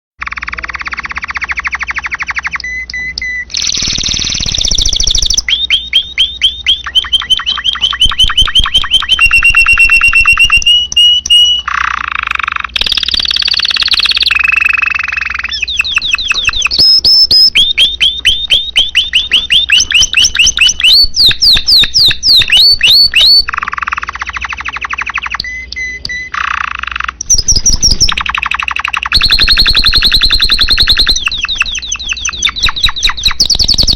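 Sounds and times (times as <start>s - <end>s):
canary singing trills: 0.2s - 33.9s.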